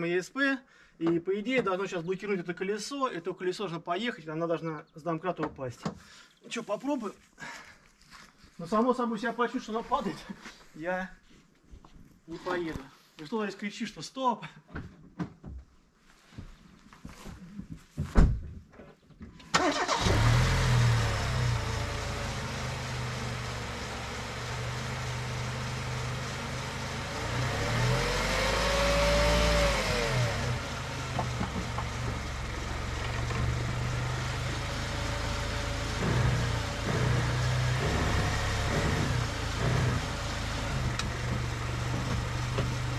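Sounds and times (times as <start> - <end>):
petrol engine starting and running: 19.4 - 42.9.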